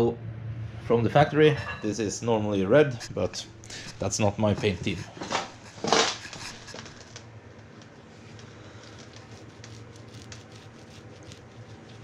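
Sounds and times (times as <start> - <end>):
low steady hum: 0.0 - 12.0
paintbrush brushing on metal: 8.8 - 12.0.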